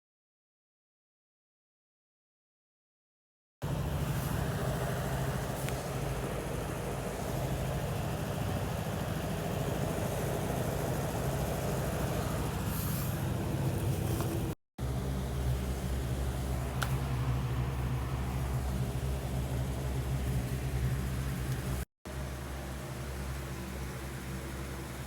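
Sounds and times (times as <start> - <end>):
low mechanical hum: 3.6 - 25.0.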